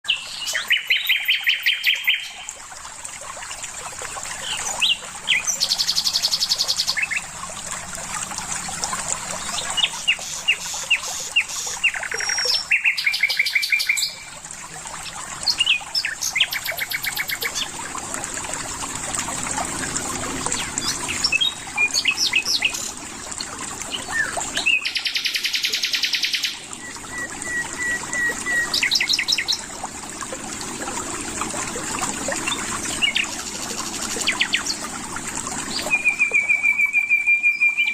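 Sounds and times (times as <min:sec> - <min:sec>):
songbirds singing: 0:00.1 - 0:02.6, 0:09.4 - 0:14.4, 0:15.4 - 0:17.8, 0:20.4 - 0:23.0, 0:23.9 - 0:29.7, 0:32.4 - 0:34.9, 0:35.7 - 0:37.9.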